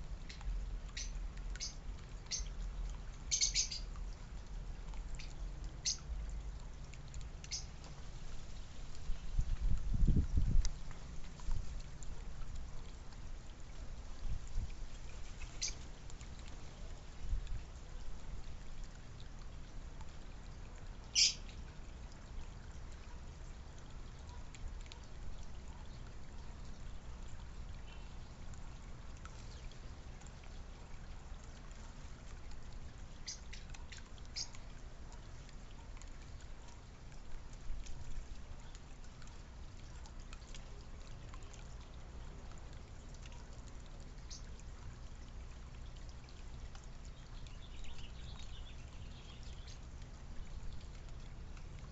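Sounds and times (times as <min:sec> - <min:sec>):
high bird chirps: 0:03.3 - 0:03.8, 0:21.2 - 0:21.4.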